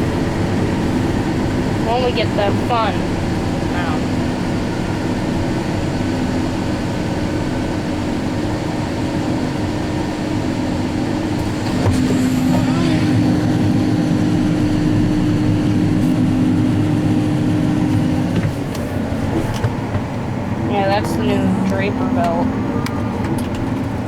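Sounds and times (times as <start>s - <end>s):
combine harvester drone: 0.0s - 24.0s.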